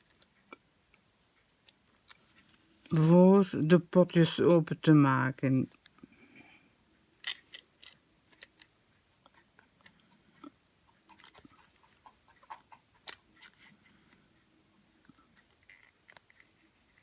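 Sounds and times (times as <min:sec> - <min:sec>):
plastic toy pieces clicking: 0:07.2 - 0:08.7.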